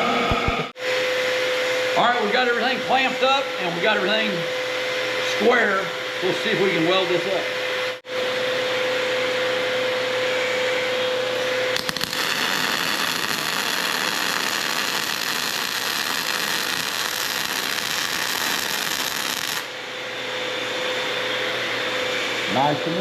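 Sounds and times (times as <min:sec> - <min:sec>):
fan-like hum: 0:00.0 - 0:23.0
welding arc crackling: 0:11.7 - 0:19.8.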